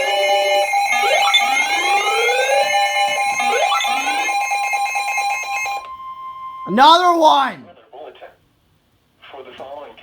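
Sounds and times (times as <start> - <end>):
rising pitch sweeps: 0.0 - 6.7
steady alert tone: 0.0 - 7.0.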